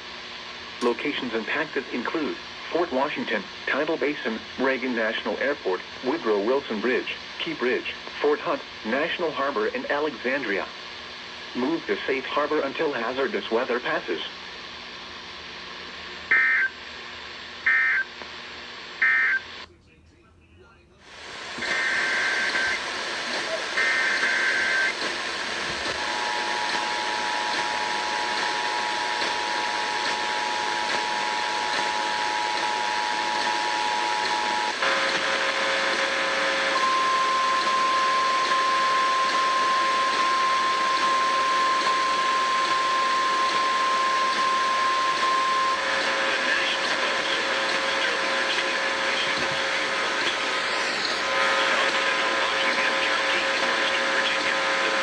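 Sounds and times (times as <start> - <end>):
radio hiss: 0.1 - 55.0
weather radio warning alarm tone: 25.6 - 55.0.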